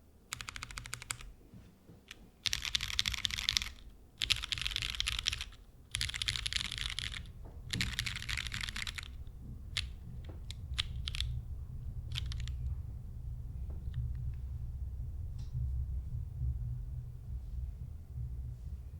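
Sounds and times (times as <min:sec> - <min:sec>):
mechanical keyboard keys rattling: 0:00.3 - 0:01.3, 0:02.1 - 0:11.3, 0:12.1 - 0:12.6.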